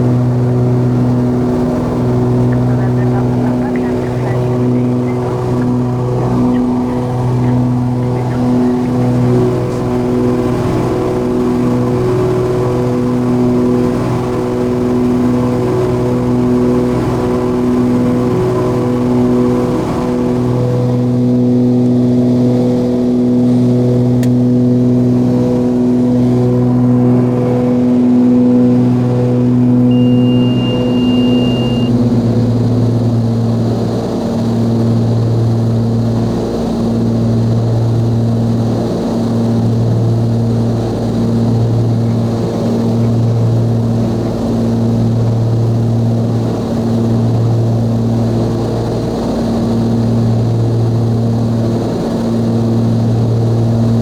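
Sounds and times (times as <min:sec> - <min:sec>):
twin piston aircraft engines throbbing: 0:00.0 - 0:54.0
short high beep: 0:29.9 - 0:31.9.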